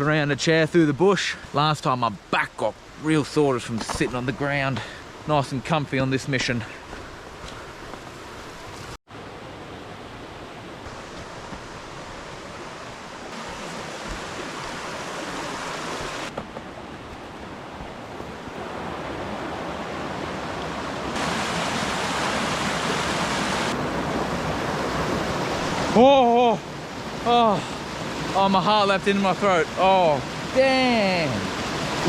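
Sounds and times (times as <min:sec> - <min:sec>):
river water rushing: 0:06.8 - 0:32.0.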